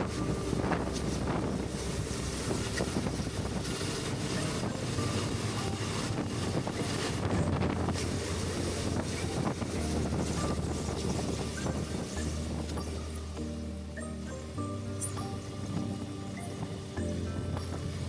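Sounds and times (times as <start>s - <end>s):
motorcycle engine and road drone: 0.0s - 12.3s
wind buffeting microphone: 0.0s - 18.0s.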